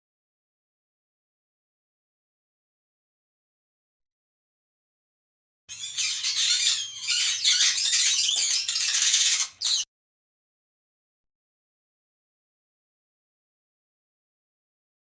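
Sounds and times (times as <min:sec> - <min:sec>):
mouse squeaking: 0:05.7 - 0:09.9.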